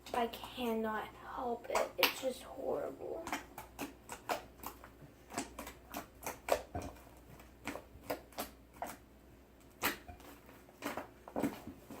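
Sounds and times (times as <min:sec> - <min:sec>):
slime squished by hand: 0:09.6 - 0:12.0.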